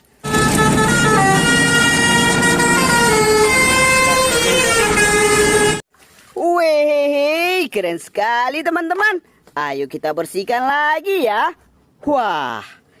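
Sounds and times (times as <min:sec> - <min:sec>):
multi-tone bus air horn tune: 0:00.1 - 0:05.8.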